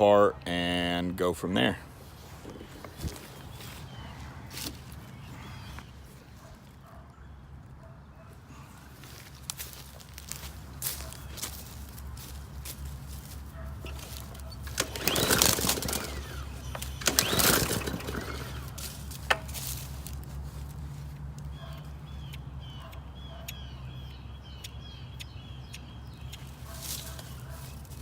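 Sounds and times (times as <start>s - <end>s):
birds chirping: 0.0s - 28.0s
recoil starter cord pull: 13.8s - 20.2s.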